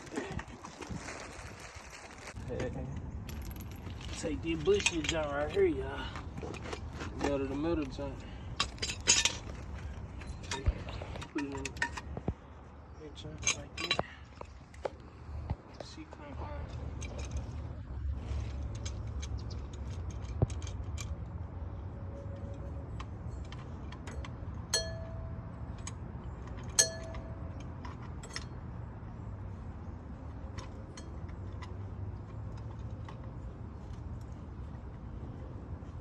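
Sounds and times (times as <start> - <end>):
metal tools clinking: 2.6 - 12.3, 13.1 - 14.7, 15.8 - 34.9
ringing metal clinks: 23.2 - 26.0, 26.6 - 28.6.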